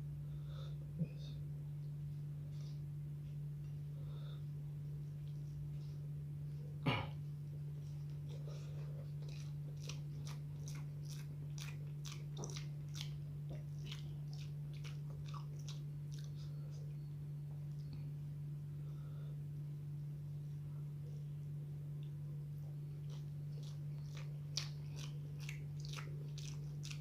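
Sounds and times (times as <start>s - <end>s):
steady low hum: 0.0s - 27.0s
wet chewing and mouth smacking: 7.8s - 18.0s, 22.0s - 27.0s.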